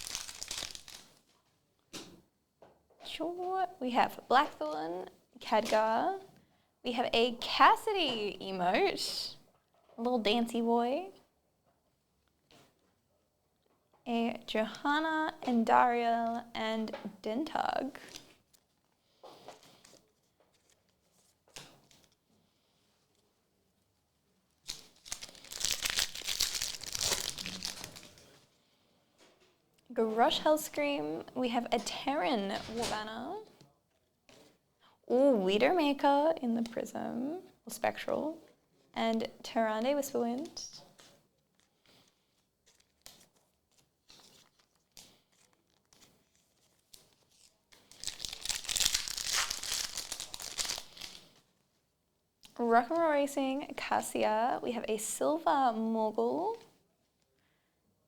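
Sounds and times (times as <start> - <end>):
wrapper tearing and crinkling: 0.0 - 1.3, 24.6 - 28.3, 42.6 - 51.4.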